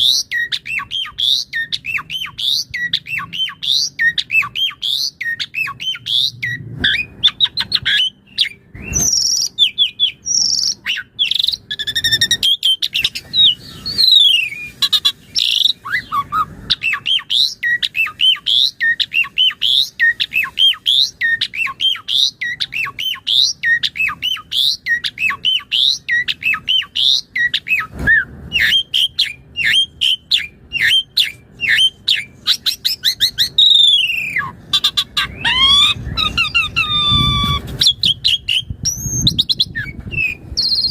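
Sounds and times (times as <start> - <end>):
starling singing: 0.0 - 27.9, 28.5 - 40.9.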